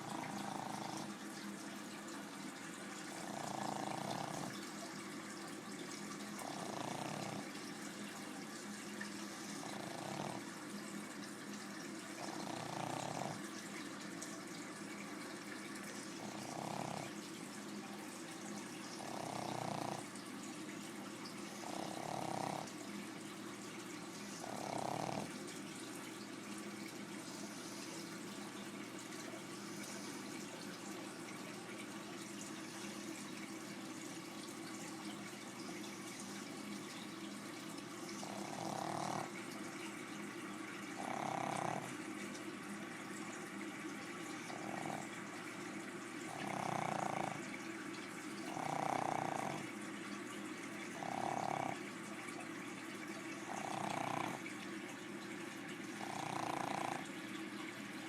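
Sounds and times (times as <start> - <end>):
dog snoring: 0.0 - 1.2, 3.1 - 4.7, 6.4 - 7.6, 9.2 - 10.6, 12.2 - 13.5, 16.2 - 17.2, 18.9 - 20.1, 21.5 - 22.8, 24.2 - 25.4, 27.3 - 28.1, 38.1 - 39.4, 40.9 - 42.0, 44.4 - 45.2, 46.3 - 47.5, 48.5 - 49.7, 50.9 - 51.9, 53.4 - 54.4, 56.0 - 57.0.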